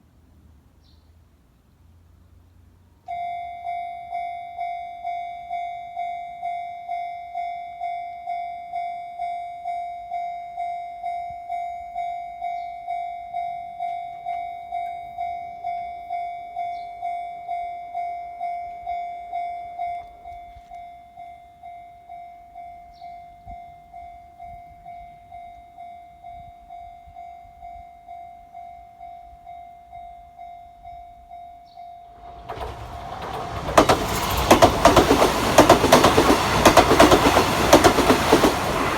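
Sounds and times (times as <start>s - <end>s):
level crossing bell dinging: 3.1s - 32.7s.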